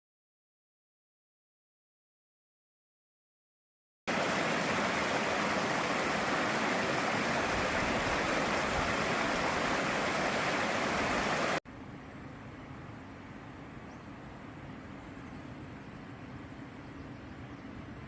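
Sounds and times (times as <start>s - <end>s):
rushing white water: 4.1s - 11.6s.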